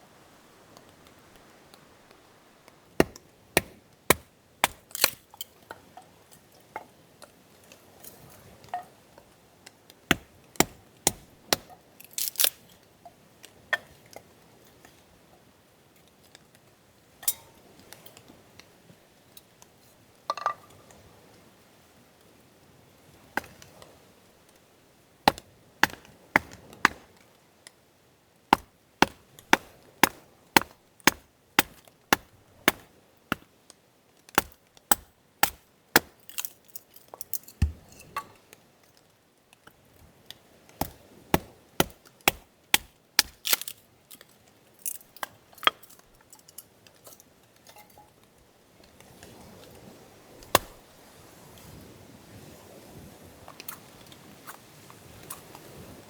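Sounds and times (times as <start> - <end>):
knife chopping on cutting board: 3.0 - 5.2, 25.3 - 27.0, 28.6 - 33.4, 34.4 - 36.2, 50.6 - 50.8.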